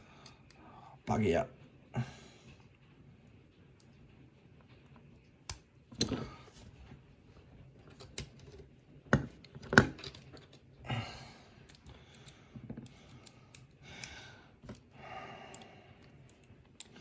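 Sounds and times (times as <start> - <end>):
small metal clicks and taps: 11.6 - 14.9, 15.5 - 17.0.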